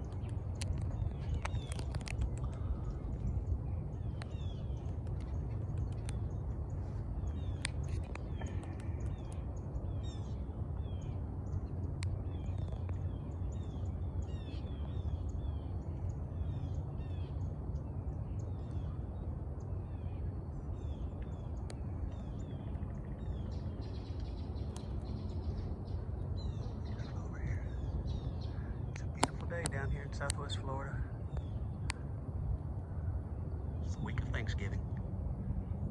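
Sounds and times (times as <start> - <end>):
low rumble: 0.0 - 35.9
small birds chirping: 0.0 - 35.9
sharp ticks: 28.9 - 30.5.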